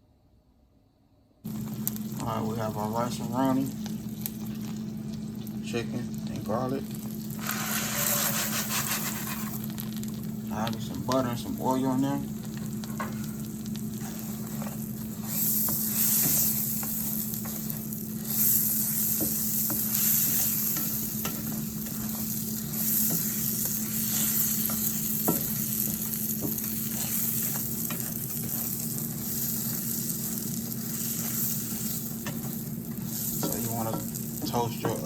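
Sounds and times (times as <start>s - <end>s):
food sizzling in a pan: 1.4s - 35.0s
spoon tapping and scraping pan: 19.1s - 28.6s.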